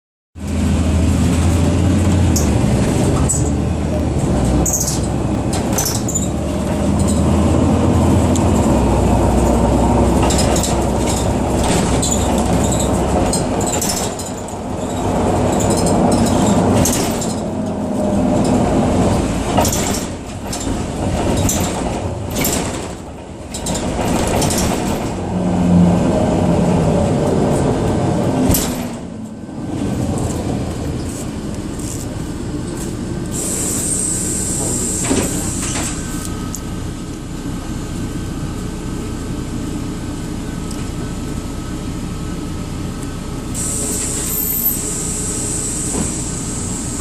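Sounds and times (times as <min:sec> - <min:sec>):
bus engine labouring: 0:00.4 - 0:47.0
rattles and knocks: 0:10.1 - 0:25.3.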